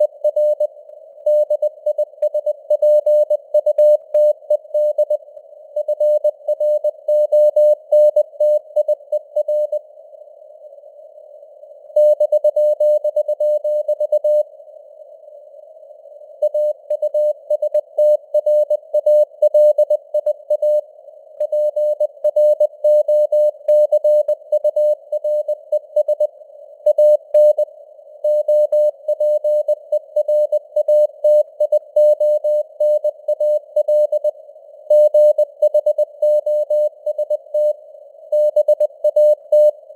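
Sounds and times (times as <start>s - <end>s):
morse code beeps: 38.4s - 39.7s.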